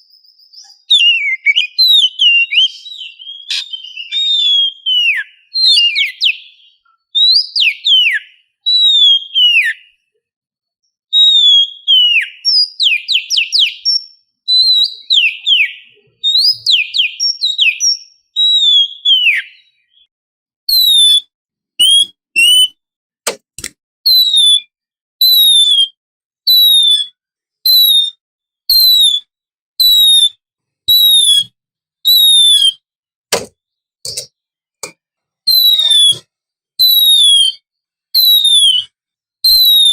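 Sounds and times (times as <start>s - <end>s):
bird singing whistled phrases: 0.0s - 10.2s, 10.8s - 20.1s, 20.7s - 22.8s, 24.1s - 32.8s, 35.5s - 36.2s, 36.8s - 37.6s, 38.2s - 39.9s
sharp clicks: 23.3s - 23.8s.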